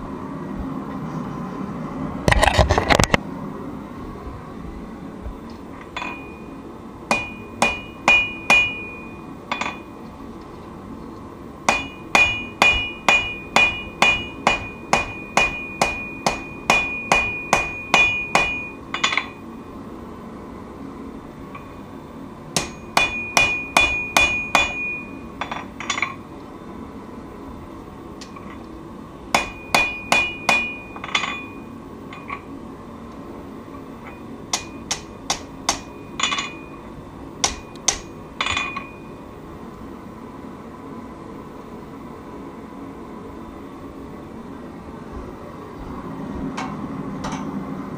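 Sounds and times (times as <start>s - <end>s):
hammer ringing on steel: 6.0s - 6.5s, 7.1s - 10.0s, 11.7s - 19.4s, 22.6s - 26.2s, 29.4s - 32.4s, 34.5s - 36.8s, 37.4s - 39.2s.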